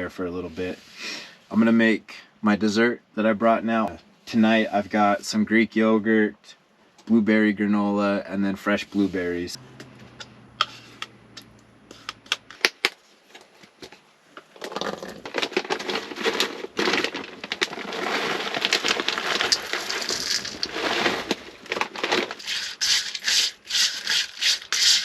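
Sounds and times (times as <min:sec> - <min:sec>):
granola rattling from plastic bag: 0:14.5 - 0:25.0.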